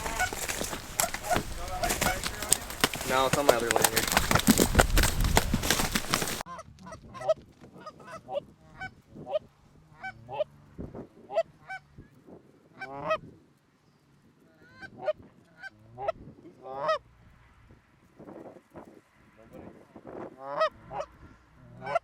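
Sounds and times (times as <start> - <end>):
goose honking and clucking: 0.0 - 4.4.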